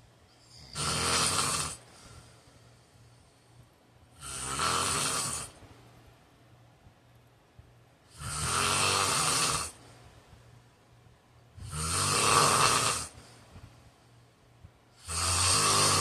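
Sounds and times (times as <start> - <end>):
man snoring: 0.4 - 1.9, 4.2 - 5.6, 8.1 - 9.8, 11.6 - 13.2, 15.0 - 16.0.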